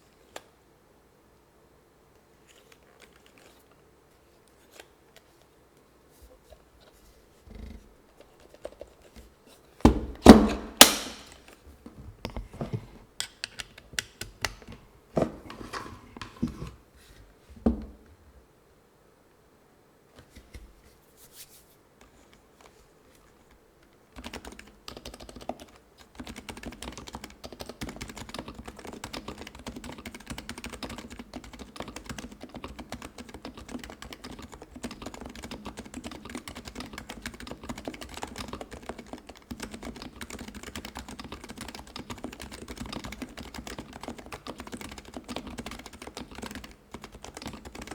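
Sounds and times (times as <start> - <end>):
keyboard key knocks: 9.9 - 11.4
fast typing on keyboard: 24.1 - 47.9.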